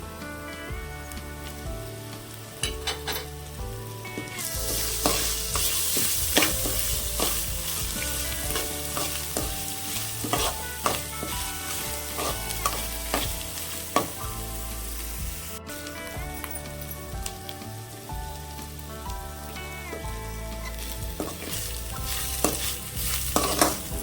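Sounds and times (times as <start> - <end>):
food sizzling in hot oil: 1.0 - 24.0
spoon tapping and scraping pan: 4.9 - 14.3, 20.7 - 24.0.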